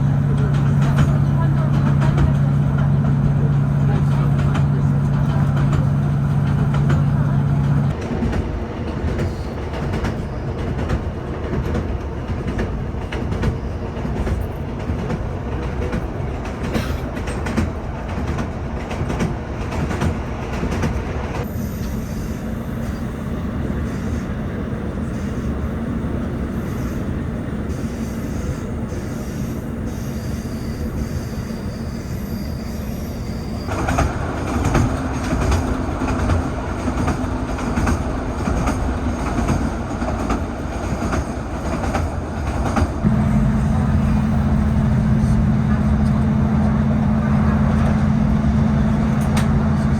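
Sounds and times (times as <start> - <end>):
diesel train rumbling: 0.0 - 49.9
wheels clicking over rail joints: 33.7 - 43.2.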